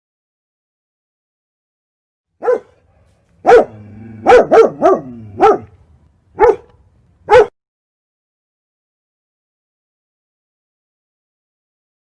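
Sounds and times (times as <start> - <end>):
dog barking: 2.4 - 5.8, 6.4 - 6.7, 7.3 - 7.6.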